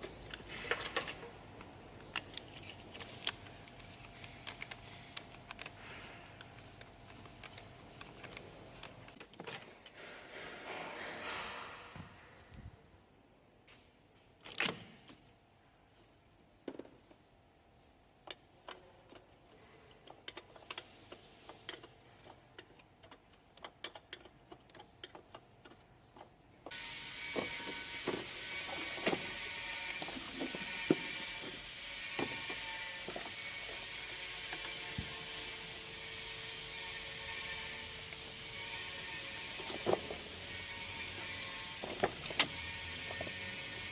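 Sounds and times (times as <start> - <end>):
tools and metal parts clanking: 0.0 - 12.0, 21.5 - 43.9
steady mechanical hum: 0.0 - 43.9.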